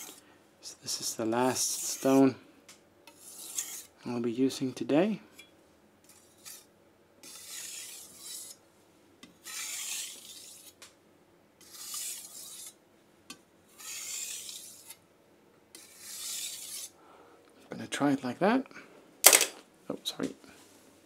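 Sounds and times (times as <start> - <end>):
knife rasping on whetstone: 1.5 - 2.2, 3.1 - 4.0, 6.0 - 8.6, 9.4 - 10.8, 11.6 - 12.8, 13.7 - 15.0, 15.7 - 17.0.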